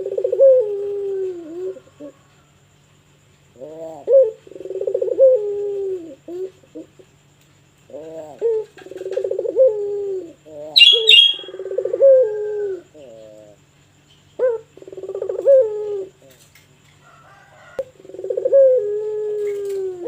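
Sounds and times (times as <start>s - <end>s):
dove cooing: 0.0s - 2.1s, 3.6s - 7.0s, 7.9s - 13.6s, 14.4s - 16.2s, 18.0s - 20.0s
high chirp: 10.8s - 11.5s.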